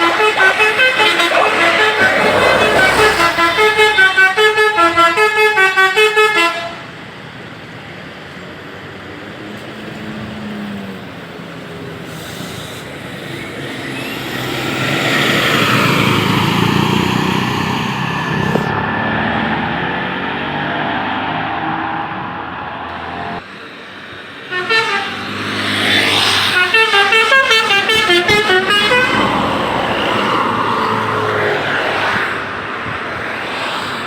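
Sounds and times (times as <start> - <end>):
multi-tone bus horn tune: 0.0 - 7.0, 24.4 - 30.3
passing traffic noise: 0.0 - 34.0.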